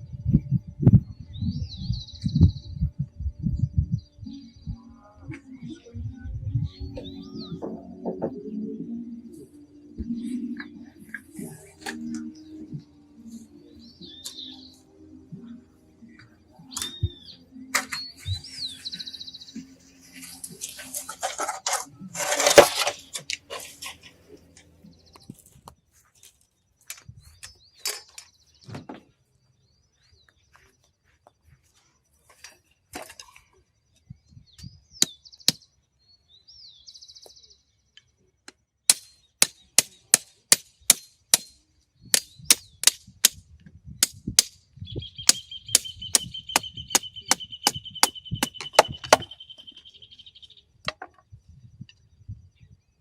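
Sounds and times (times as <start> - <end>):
low rumble: 0.0 - 4.9.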